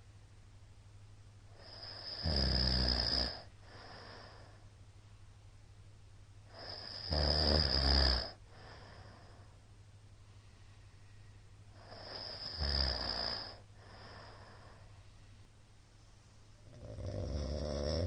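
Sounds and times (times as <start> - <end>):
steady low hum: 0.0 - 18.0
man snoring loudly: 1.6 - 3.5, 6.5 - 8.4, 11.9 - 13.6, 16.6 - 18.0.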